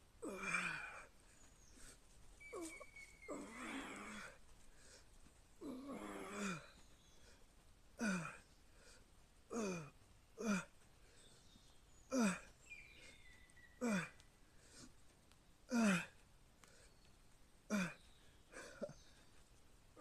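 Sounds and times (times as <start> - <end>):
man grunting with effort: 0.2 - 1.0.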